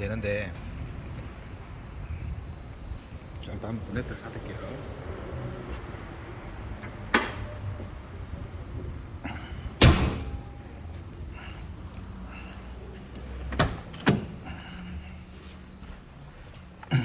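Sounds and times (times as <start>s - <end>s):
car bonnet slamming shut: 7.1s - 7.5s, 9.8s - 10.7s, 13.5s - 14.4s.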